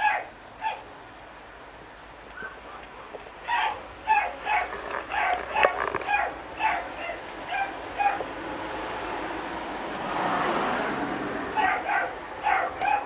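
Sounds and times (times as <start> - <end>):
puppy yipping: 2.4 - 8.3, 11.6 - 13.0.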